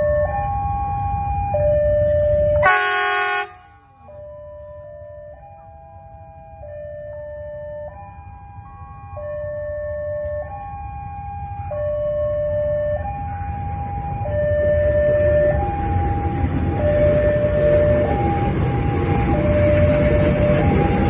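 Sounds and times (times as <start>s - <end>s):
two-tone train horn: 2.6s - 3.8s
train rumble: 4.6s - 21.0s.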